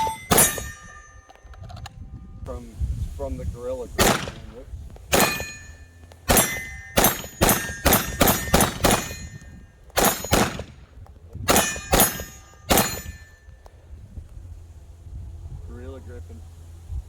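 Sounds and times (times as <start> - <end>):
pistol shots: 0.0 - 1.2, 4.0 - 13.3.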